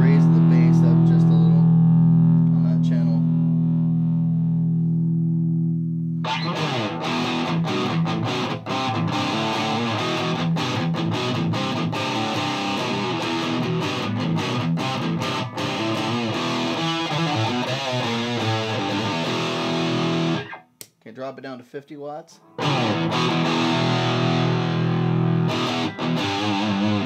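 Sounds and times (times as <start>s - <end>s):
distorted electric guitar riff: 0.0s - 20.7s, 22.5s - 27.0s.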